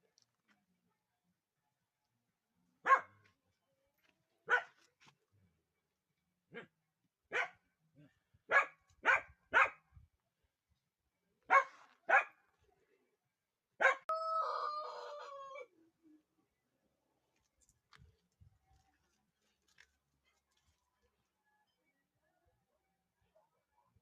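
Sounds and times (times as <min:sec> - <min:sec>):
dog barking: 0:02.8 - 0:03.2, 0:04.5 - 0:04.8, 0:06.5 - 0:06.7, 0:07.3 - 0:07.7, 0:08.5 - 0:09.8, 0:11.5 - 0:12.4, 0:13.8 - 0:14.1.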